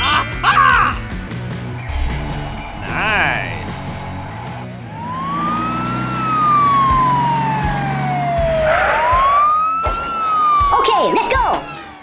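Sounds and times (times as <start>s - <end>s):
siren wailing: 5.0s - 12.0s.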